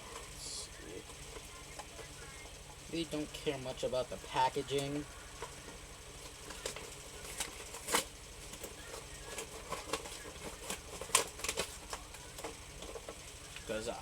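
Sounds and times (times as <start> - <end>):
packaging crackling and rustling: 5.3 - 13.8
packaging snapping: 6.2 - 13.7.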